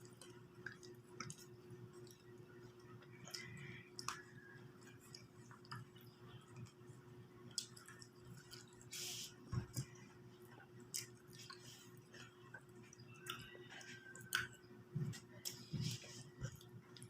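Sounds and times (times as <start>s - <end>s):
chewing: 0.0s - 6.8s, 7.5s - 17.0s
faint steady hum: 0.0s - 17.0s.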